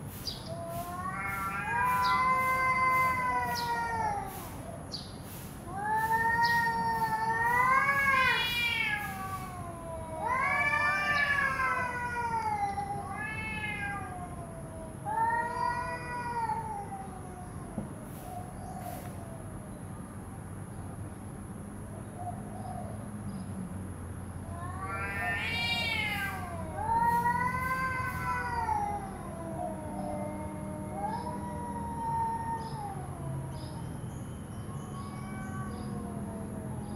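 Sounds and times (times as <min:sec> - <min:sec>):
cat meowing: 0:00.5 - 0:04.6, 0:05.6 - 0:17.8, 0:24.4 - 0:33.8, 0:34.5 - 0:36.9.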